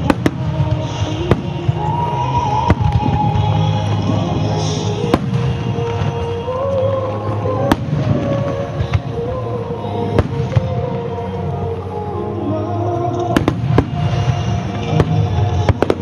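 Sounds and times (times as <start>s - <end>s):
fireworks bangs: 0.0s - 7.0s, 7.6s - 9.3s, 13.2s - 16.0s
music with melody: 0.0s - 16.0s.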